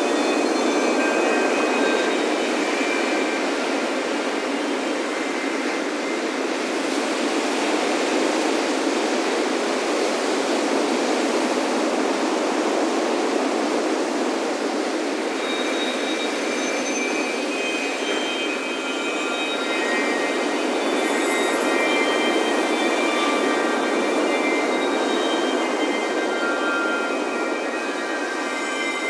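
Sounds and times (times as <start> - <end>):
wind chime tones: 0.0 - 7.3, 15.2 - 29.0
ocean surf washing onto beach: 17.2 - 29.0.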